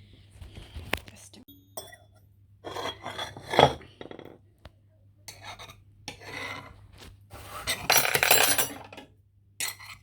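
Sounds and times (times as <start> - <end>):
lid scraping against bowl: 5.3 - 8.8.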